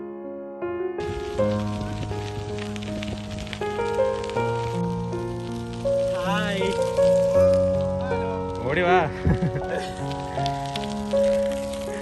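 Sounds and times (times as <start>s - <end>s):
electric piano notes: 1.0s - 12.0s
steady hiss: 1.0s - 12.0s.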